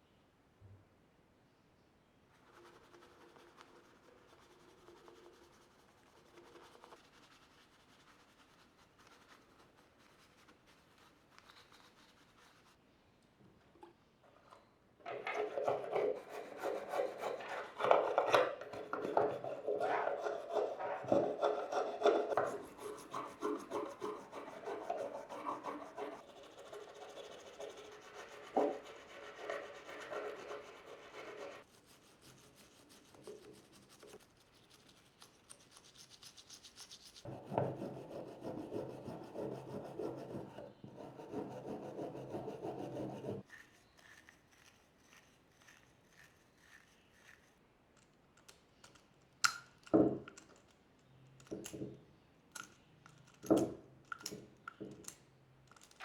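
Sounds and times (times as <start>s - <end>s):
scrubbing strokes: 15.0s - 47.4s.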